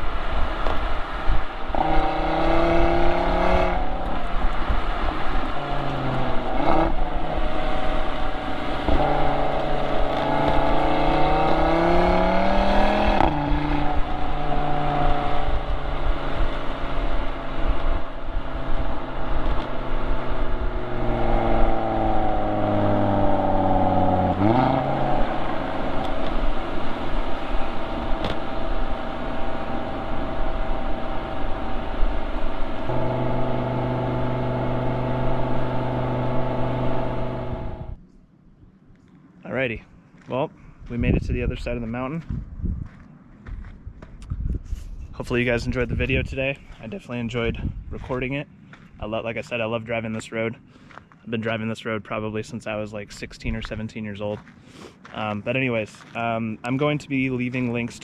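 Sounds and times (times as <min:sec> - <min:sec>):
car engine and exhaust revving: 0:00.0 - 0:38.1.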